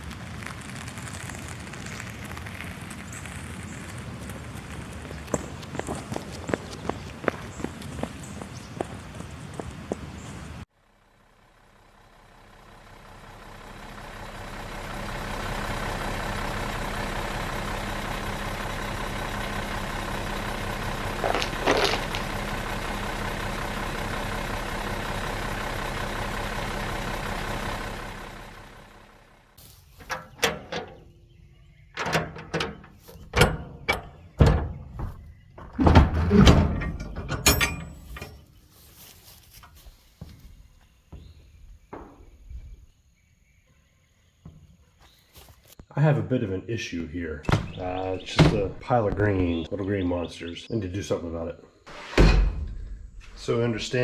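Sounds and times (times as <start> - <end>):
knocks and clunks: 29.9 - 38.6, 39.6 - 42.9, 47.4 - 49.7.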